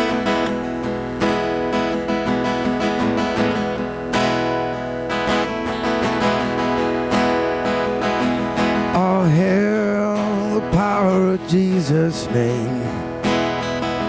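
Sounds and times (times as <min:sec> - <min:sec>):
strummed acoustic guitar: 0:00.0 - 0:14.0
person singing: 0:08.9 - 0:13.3.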